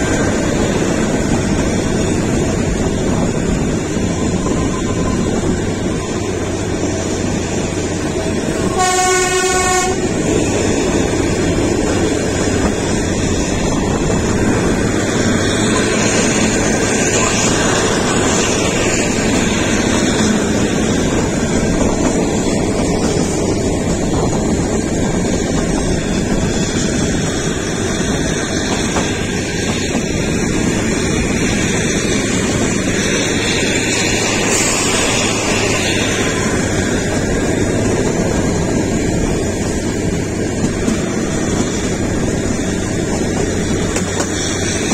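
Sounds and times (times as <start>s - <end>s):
train wheels rumbling on track: 0.0s - 44.9s
train horn: 8.5s - 10.3s.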